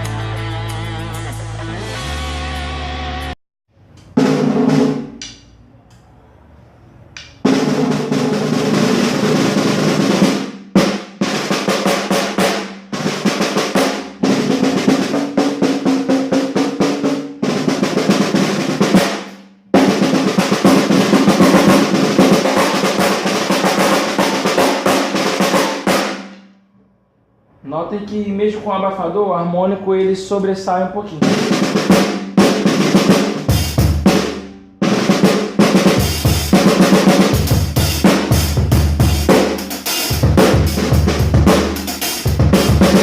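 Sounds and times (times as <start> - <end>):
snare drum rolls and strokes: 7.2 - 26.4, 31.2 - 43.0
snare drum ringing overtone: 18.8 - 26.4.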